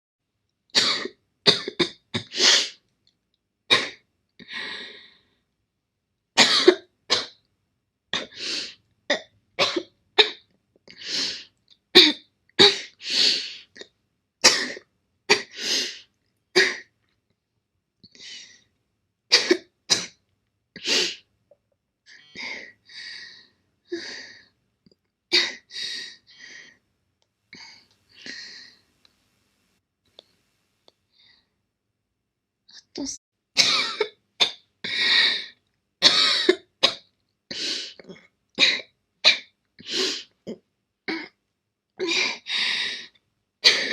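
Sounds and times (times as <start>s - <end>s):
girl coughing: 0.8s - 2.4s, 6.4s - 7.3s, 33.6s - 35.1s, 36.0s - 37.0s, 43.7s - 43.9s
quiet breaths: 4.4s - 5.6s, 27.5s - 31.6s.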